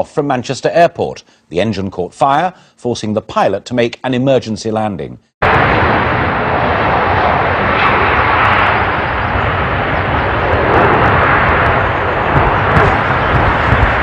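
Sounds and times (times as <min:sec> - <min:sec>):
jet engines at take-off power: 0:05.4 - 0:14.0.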